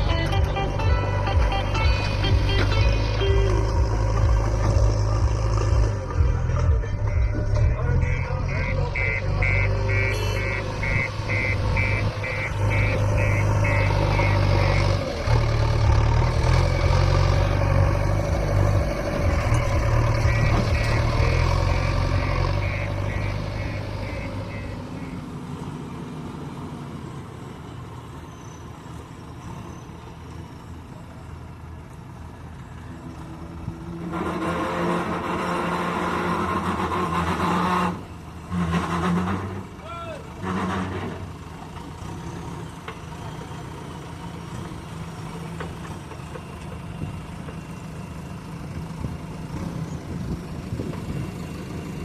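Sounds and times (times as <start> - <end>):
diesel engine running under load: 0.0 - 52.0
reversing alarm beeping: 6.9 - 15.1, 20.1 - 25.2.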